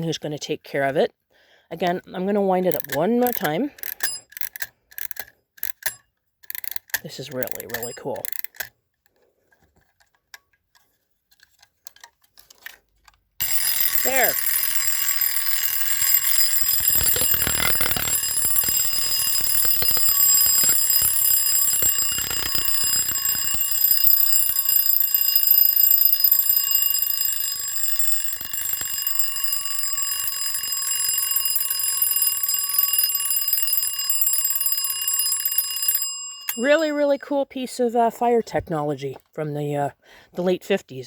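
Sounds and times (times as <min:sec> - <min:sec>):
wind-up fire alarm bell ringing: 0:02.7 - 0:04.5, 0:07.1 - 0:08.4, 0:13.4 - 0:37.4.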